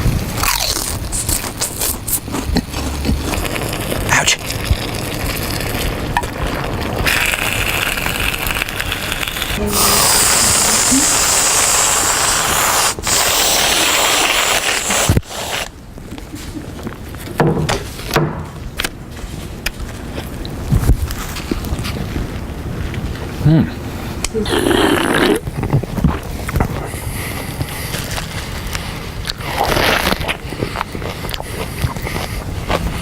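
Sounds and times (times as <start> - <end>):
sharp crackles: 0.2 - 15.7, 27.3 - 32.9
snack crunching: 0.2 - 15.7, 24.5 - 33.0
snack packaging crinkling: 0.2 - 15.7, 27.6 - 33.0.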